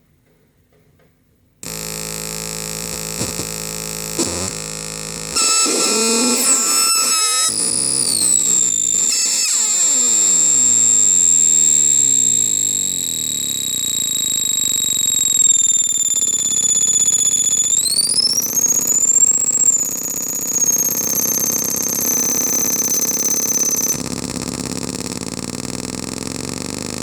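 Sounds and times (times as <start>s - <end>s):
gritty distorted noise: 1.6s - 14.0s
shrill piercing synth tones: 1.6s - 24.0s.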